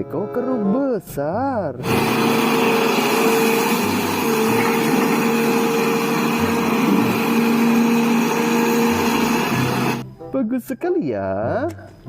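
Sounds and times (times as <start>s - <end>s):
toy excavator motor whining: 1.8s - 10.0s.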